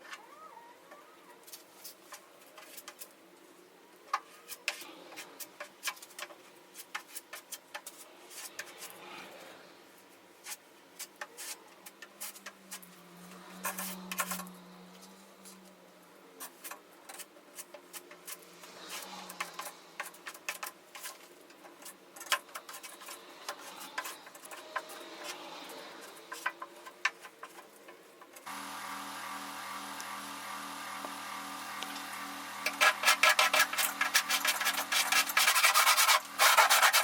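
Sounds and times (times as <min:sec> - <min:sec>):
hand tool scraping and rubbing: 0:06.8 - 0:09.6, 0:10.4 - 0:15.7, 0:16.4 - 0:28.4, 0:31.9 - 0:37.0.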